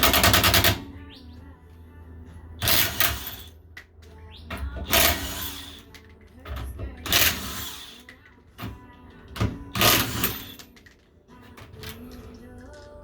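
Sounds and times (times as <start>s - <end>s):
impact wrench hammering: 0.0s - 0.8s.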